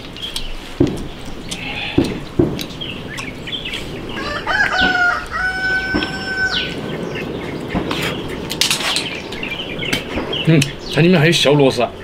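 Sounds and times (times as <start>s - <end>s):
rooster crowing: 4.1s - 6.9s.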